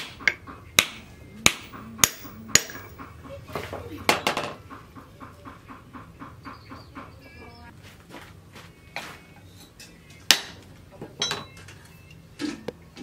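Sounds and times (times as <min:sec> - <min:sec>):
hammer striking metal: 0:00.0 - 0:03.1.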